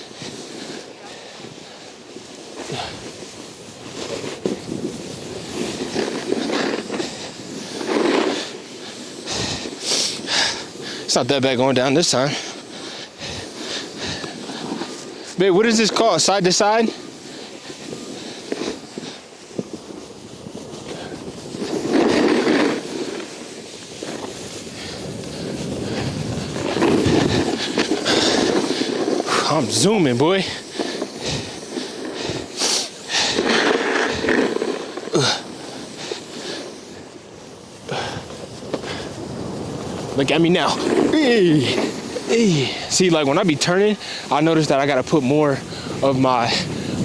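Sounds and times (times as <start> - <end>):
snowboard scraping over snow: 0.0 - 47.0
wind on microphone: 2.5 - 11.5, 12.3 - 16.0, 16.9 - 44.3, 45.0 - 47.0.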